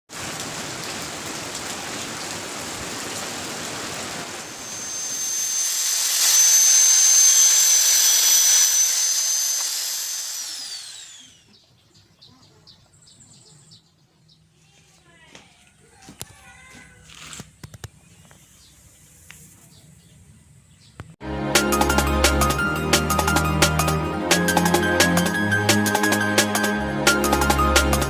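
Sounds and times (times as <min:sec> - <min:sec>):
power tool whining: 0:04.2 - 0:11.6.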